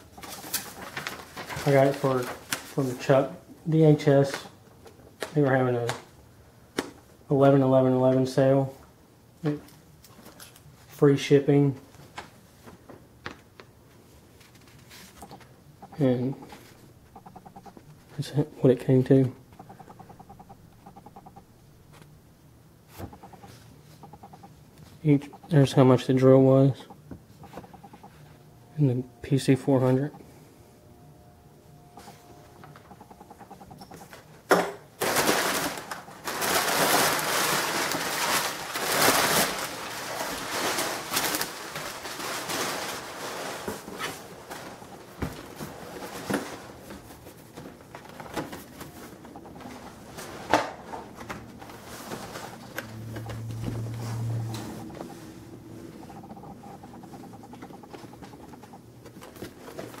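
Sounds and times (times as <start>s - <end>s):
packaging rustling: 0.0s - 3.1s, 35.0s - 55.2s
scattered clicks and knocks: 15.2s - 17.9s, 19.5s - 21.4s, 23.0s - 24.5s, 26.9s - 28.2s, 32.0s - 34.8s, 49.2s - 50.0s, 56.0s - 60.0s.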